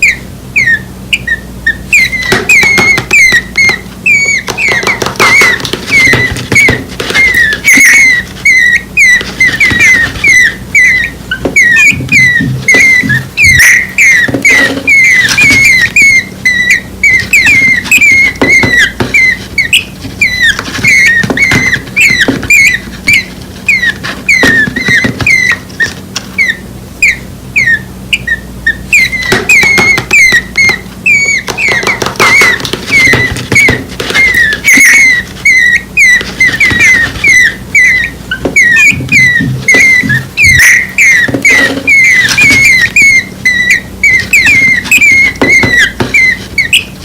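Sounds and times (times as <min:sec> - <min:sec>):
chicks chirping: 0:00.0 - 0:47.0.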